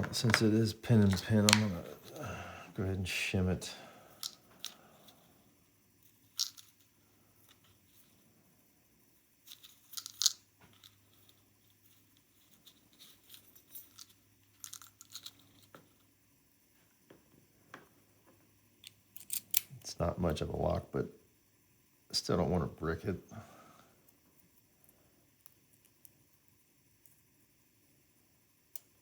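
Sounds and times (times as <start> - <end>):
small clicks and scrapes in a lock: 18.8 - 19.7.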